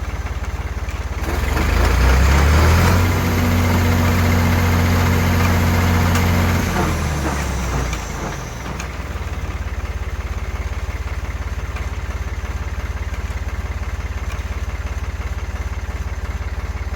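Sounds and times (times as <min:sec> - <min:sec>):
tractor engine idling: 0:00.0 - 0:16.9.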